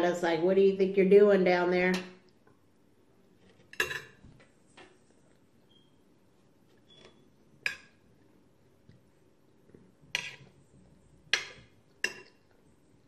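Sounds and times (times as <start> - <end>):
cutlery clinking against dish: 3.7 - 4.2.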